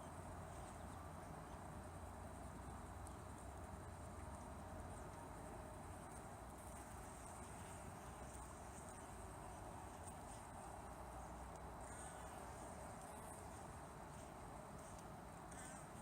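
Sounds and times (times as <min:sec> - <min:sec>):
background hiss: 0:00.0 - 0:16.0
insects trilling: 0:06.0 - 0:16.0.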